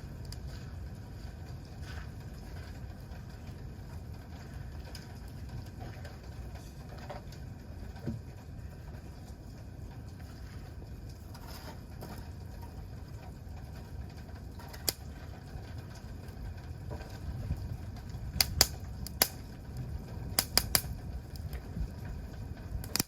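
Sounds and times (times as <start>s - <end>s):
burning wood popping: 0.0s - 23.0s
campfire crackling: 0.0s - 23.0s
low steady rumble: 0.0s - 23.0s.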